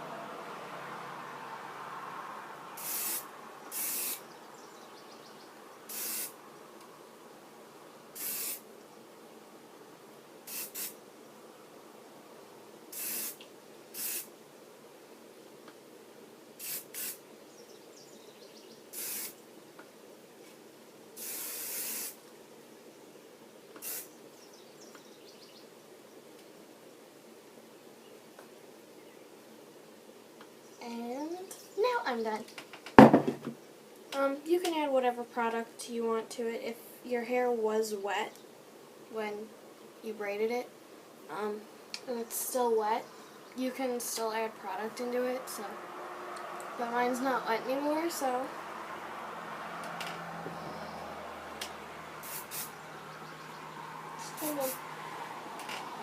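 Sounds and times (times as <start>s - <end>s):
hairspray hissing bursts: 2.8s - 4.2s, 5.9s - 6.4s, 8.2s - 8.6s, 10.5s - 11.0s, 12.9s - 13.4s, 14.0s - 14.3s, 16.6s - 17.2s, 18.9s - 19.4s, 21.2s - 22.2s, 23.8s - 24.1s, 52.2s - 52.8s, 54.2s - 54.8s.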